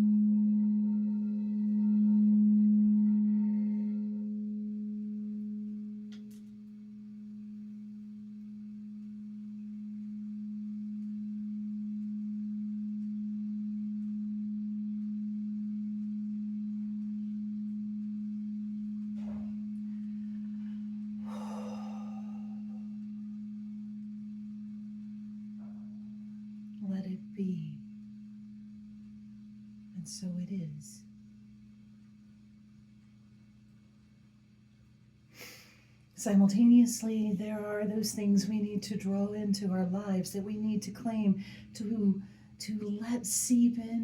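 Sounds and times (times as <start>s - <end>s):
singing bowl ringing: 0.0s - 33.6s, 36.2s - 44.0s.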